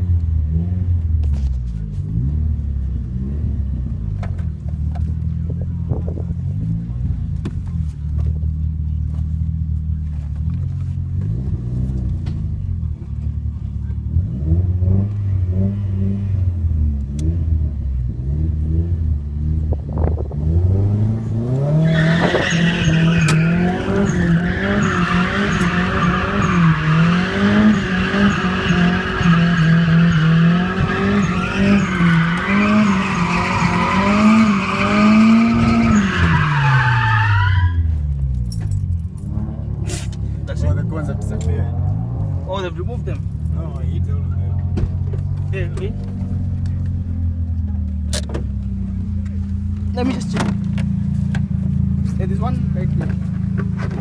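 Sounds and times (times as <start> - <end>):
car engine revving: 0.0 - 54.0
tyres squealing: 21.8 - 37.9.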